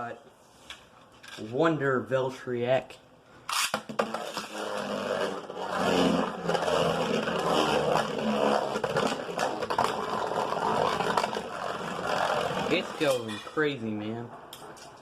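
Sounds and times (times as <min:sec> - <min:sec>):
spinning top scraping whir: 0:03.5 - 0:13.7.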